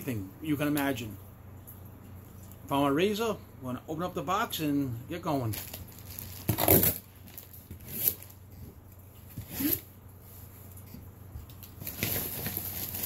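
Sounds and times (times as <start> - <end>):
razor blade slicing packing tape: 6.4 - 7.0.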